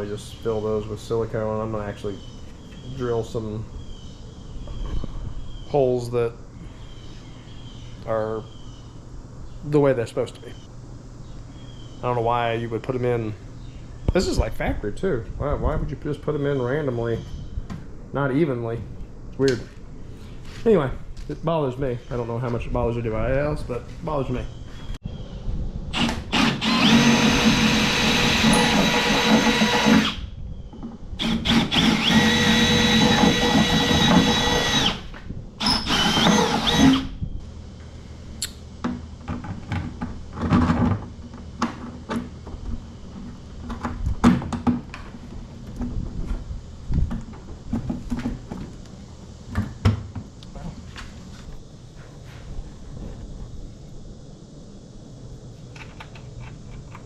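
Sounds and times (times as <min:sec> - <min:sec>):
power drill whining: 0:26.0 - 0:30.2, 0:31.2 - 0:37.1.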